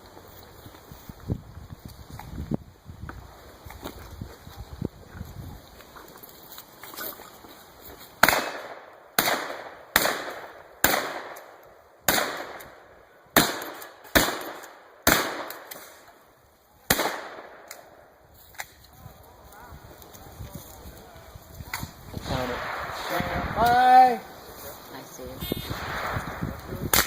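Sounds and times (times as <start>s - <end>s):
shotgun shots echoing: 8.2s - 12.8s, 13.4s - 16.0s, 16.9s - 18.0s, 22.2s - 24.2s, 25.7s - 27.0s.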